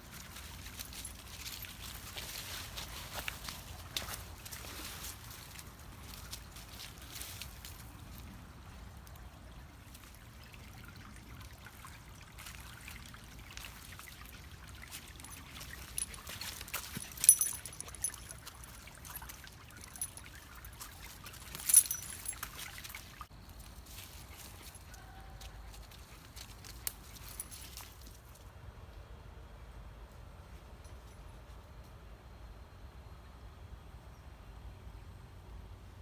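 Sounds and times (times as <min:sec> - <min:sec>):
water trickling in a creek: 0:00.0 - 0:28.4.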